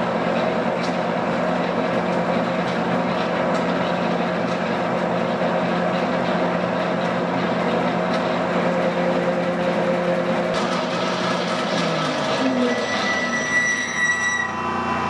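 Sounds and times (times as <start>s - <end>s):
bandsaw running: 10.5s - 14.5s.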